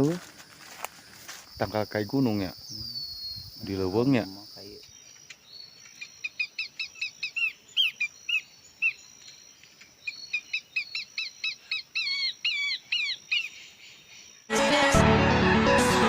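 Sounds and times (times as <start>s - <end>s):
bird chirping rapidly: 1.6s - 14.0s
music: 14.5s - 16.0s.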